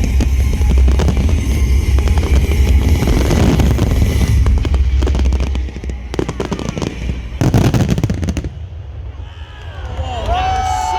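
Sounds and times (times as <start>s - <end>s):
music from loudspeakers: 0.0s - 8.5s
fireworks crackling and banging: 0.0s - 9.1s.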